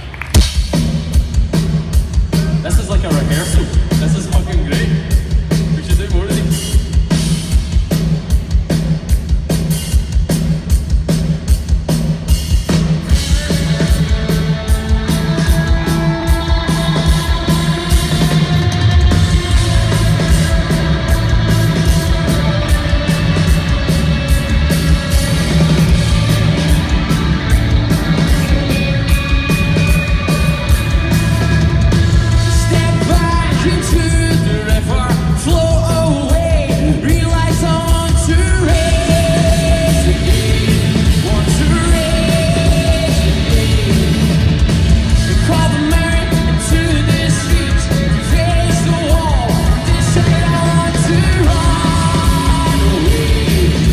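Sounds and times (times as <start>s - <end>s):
live rock band: 0.0s - 53.9s
person singing: 13.3s - 23.8s, 32.0s - 44.5s, 45.2s - 53.9s.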